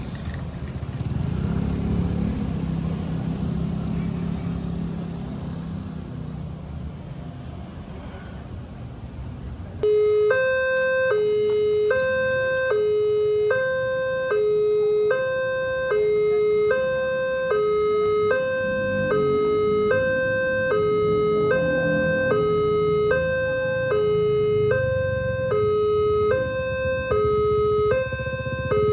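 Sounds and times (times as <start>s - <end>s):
low traffic rumble: 0.0s - 28.9s
level crossing two-tone alarm: 9.8s - 28.9s.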